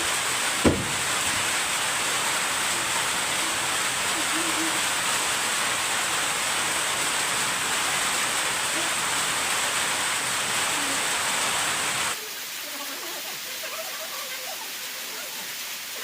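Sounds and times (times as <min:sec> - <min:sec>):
heavy rain hissing: 0:00.0 - 0:16.0.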